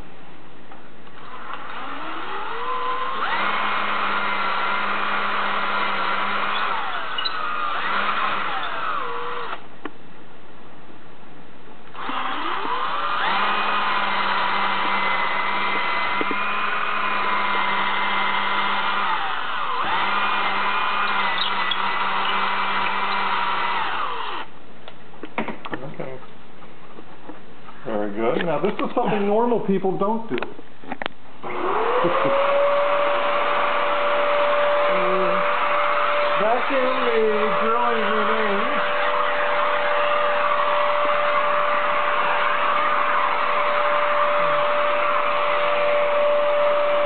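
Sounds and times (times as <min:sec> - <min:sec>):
electric drill whining: 0:01.2 - 0:09.7, 0:11.9 - 0:24.5, 0:31.4 - 0:47.0.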